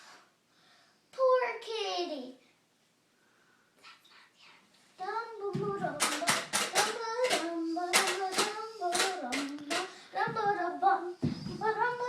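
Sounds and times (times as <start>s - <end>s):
child singing: 5.0s - 12.0s.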